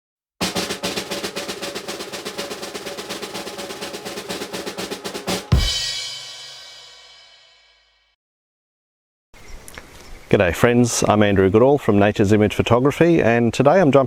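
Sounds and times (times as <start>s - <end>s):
snare drum roll: 0.4s - 7.6s
cymbal crash: 0.4s - 7.9s.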